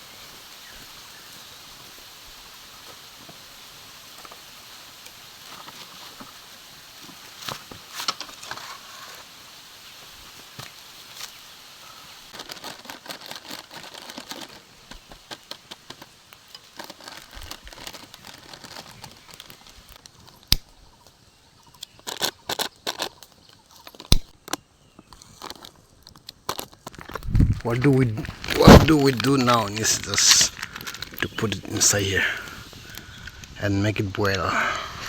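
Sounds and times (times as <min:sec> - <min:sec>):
plastic chips packet crinkling: 0:12.3 - 0:20.4, 0:21.8 - 0:24.4, 0:25.2 - 0:33.6
food being handled: 0:12.3 - 0:20.5, 0:25.0 - 0:33.4.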